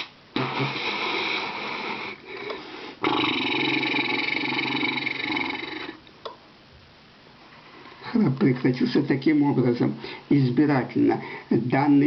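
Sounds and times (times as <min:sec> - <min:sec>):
loud rattling snoring: 0:03.0 - 0:06.0.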